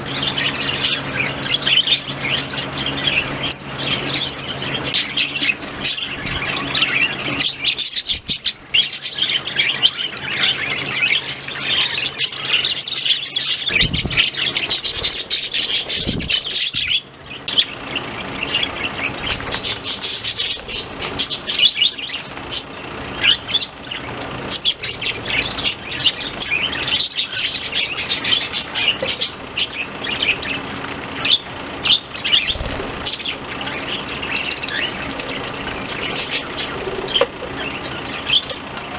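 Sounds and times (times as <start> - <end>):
budgerigars chirping and chattering: 0.0 - 38.9.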